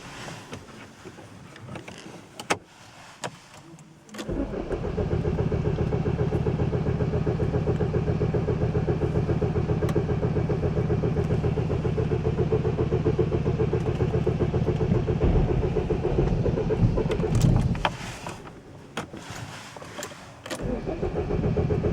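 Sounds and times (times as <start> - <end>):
diesel engine idling: 4.3 - 19.5, 20.2 - 21.9.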